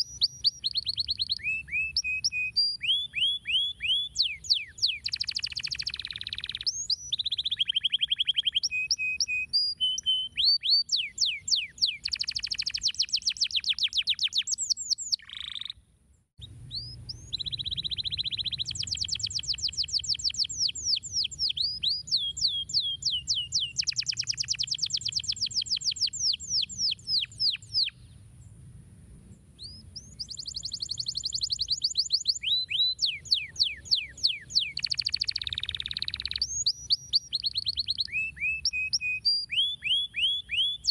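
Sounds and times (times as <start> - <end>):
canary singing trills: 0.0 - 15.8, 16.4 - 28.2, 29.6 - 40.9
faint low hum: 16.4 - 19.4.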